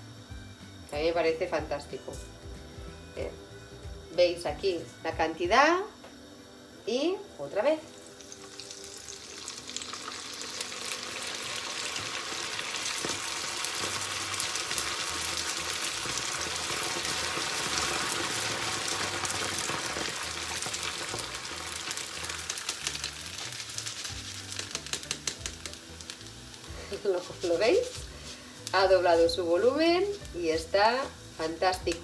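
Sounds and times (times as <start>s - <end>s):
rice sizzling in hot oil: 7.8s - 32.0s.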